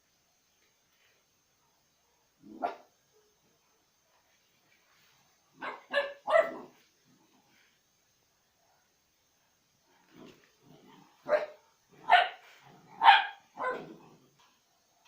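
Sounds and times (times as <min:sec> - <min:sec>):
dog barking: 0:02.1 - 0:03.4, 0:05.6 - 0:06.8, 0:10.2 - 0:14.0.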